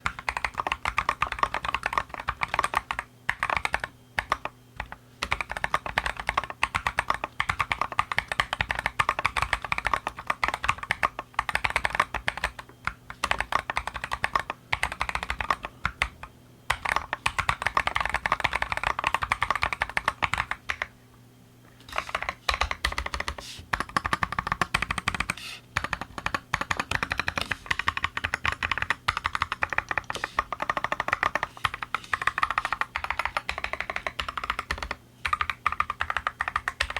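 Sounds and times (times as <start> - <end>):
fast typing on mechanical keyboard: 0.0 - 20.9, 21.9 - 36.9.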